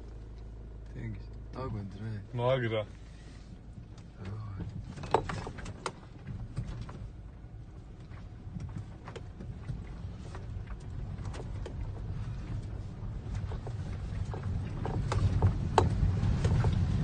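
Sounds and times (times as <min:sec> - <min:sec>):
diesel engine rumbling: 0:00.0 - 0:17.0.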